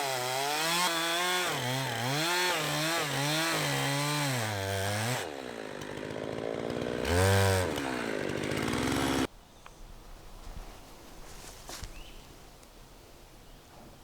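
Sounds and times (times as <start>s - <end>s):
chainsaw milling a log: 0.0s - 9.3s.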